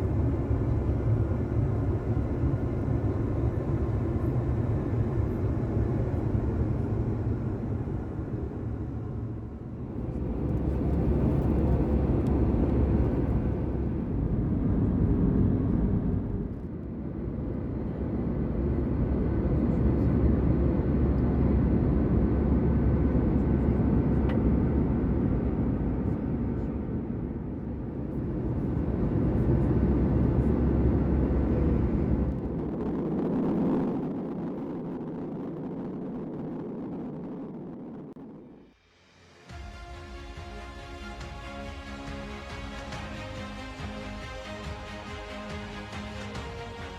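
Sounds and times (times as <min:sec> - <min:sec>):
faint steady hum: 0:00.0 - 0:14.8
airplane cabin engine rumble: 0:00.0 - 0:38.8, 0:39.4 - 0:46.9.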